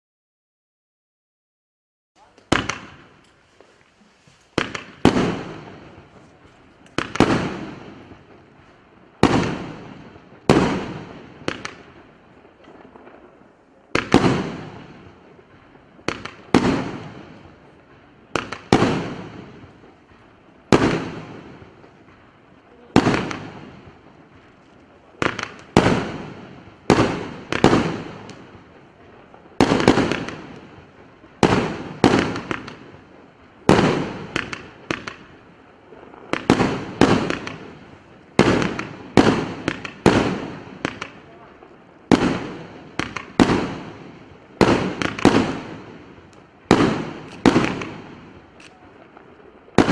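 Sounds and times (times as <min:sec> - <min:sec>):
firework shells bursting: 0:02.2 - 0:13.2, 0:36.2 - 0:41.3, 0:42.0 - 0:49.9.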